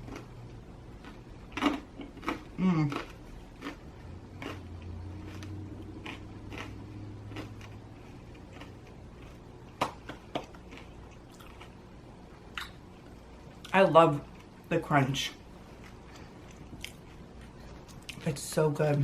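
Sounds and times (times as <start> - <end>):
low hum: 0.0 - 19.0
chewing mouth sounds: 1.0 - 11.8, 15.8 - 18.2.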